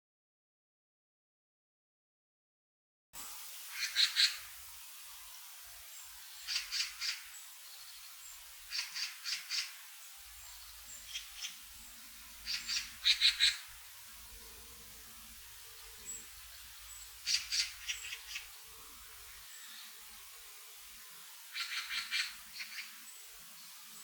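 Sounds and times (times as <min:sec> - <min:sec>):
bird giving harsh calls: 0:03.7 - 0:04.5, 0:12.4 - 0:13.7, 0:17.2 - 0:18.4, 0:21.5 - 0:23.0.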